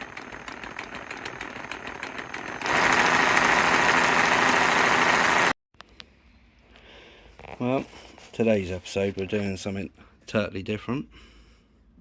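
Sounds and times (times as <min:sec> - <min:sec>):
metalworking power tool: 0:00.0 - 0:05.6.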